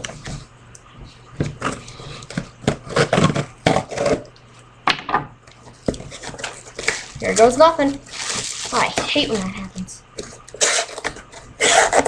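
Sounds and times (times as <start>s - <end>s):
cardboard box rustling: 8.1s - 9.4s.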